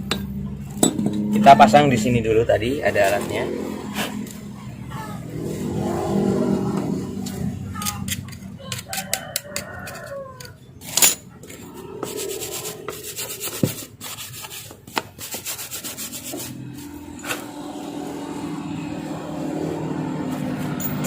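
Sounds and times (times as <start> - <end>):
metal parts scraping and clicking: 7.2 - 14.6, 20.3 - 21.0.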